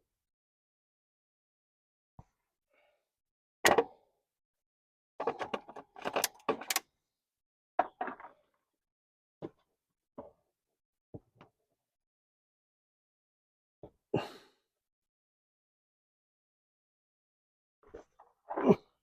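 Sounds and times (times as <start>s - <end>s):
rattling clicks: 5.2s - 6.8s.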